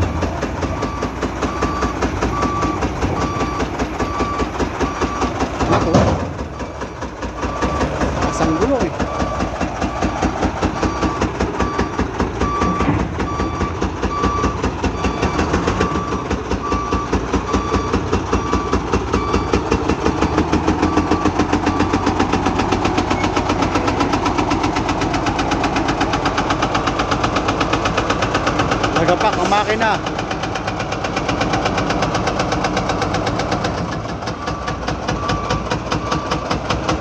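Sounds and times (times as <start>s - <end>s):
truck engine knocking: 0.0s - 37.0s
repeating beep: 10.8s - 16.2s.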